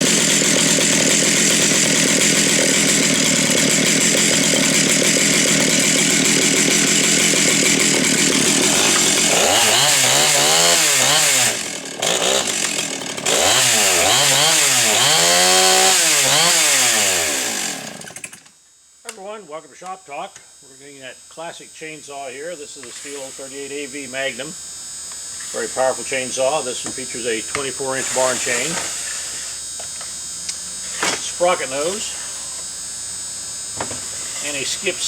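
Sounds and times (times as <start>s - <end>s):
chainsaw running and revving: 0.0s - 18.4s, 25.5s - 29.8s, 30.8s - 33.4s, 34.0s - 35.0s.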